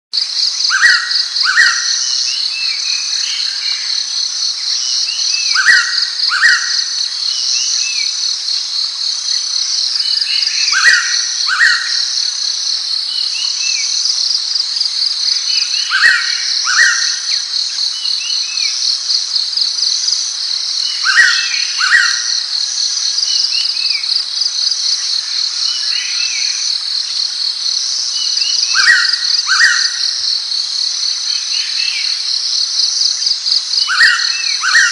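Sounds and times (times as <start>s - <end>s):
faint bird chirps: 31.2s - 34.9s.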